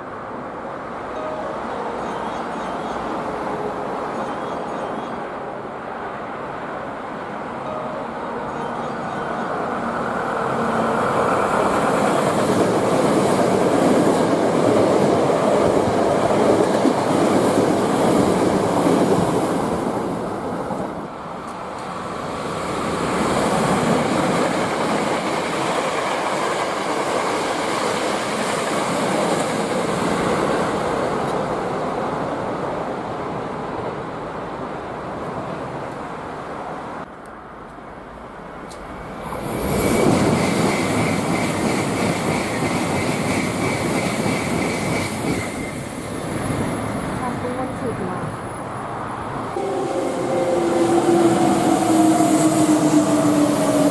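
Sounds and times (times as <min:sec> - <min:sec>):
train wheels on rails: 0:09.8 - 0:31.7, 0:37.6 - 0:48.3, 0:48.9 - 0:53.9.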